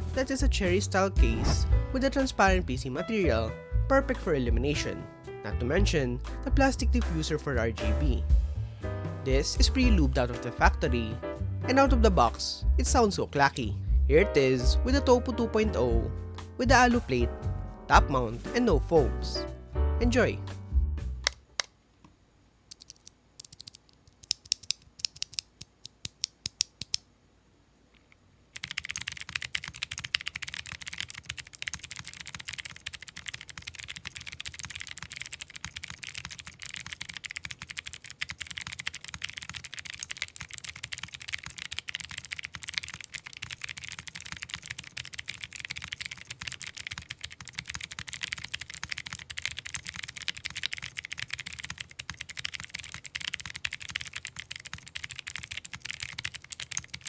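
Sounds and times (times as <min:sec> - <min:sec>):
fast clacky typing: 0:28.5 - 0:57.0.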